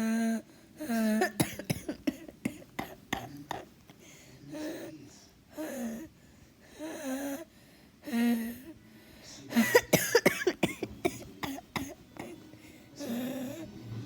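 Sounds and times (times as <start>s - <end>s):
person coughing rapidly: 0.8s - 3.7s, 9.5s - 12.4s.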